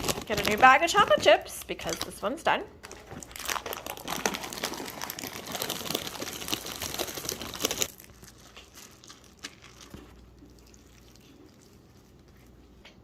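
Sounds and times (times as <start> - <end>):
plastic bag crinkling: 0.0 - 2.2, 2.8 - 10.4.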